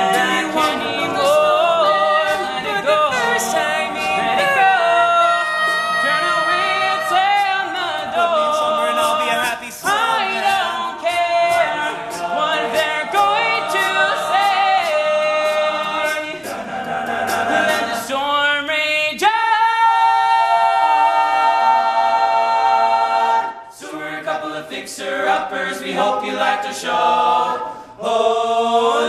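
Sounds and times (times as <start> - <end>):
ticking beat: 0.0 - 18.2
male a cappella group singing: 0.0 - 29.0.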